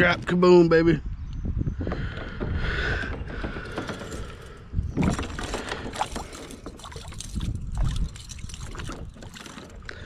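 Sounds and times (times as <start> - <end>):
gear clicking and knocking: 2.3 - 9.8.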